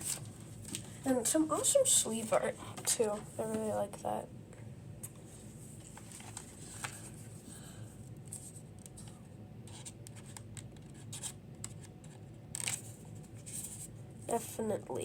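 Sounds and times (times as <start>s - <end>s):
plastic card sleeves rustling: 5.8s - 7.4s.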